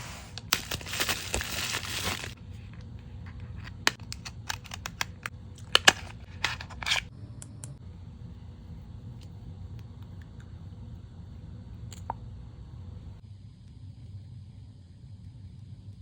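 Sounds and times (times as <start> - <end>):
packaging torn and crinkled: 0.4 - 2.4.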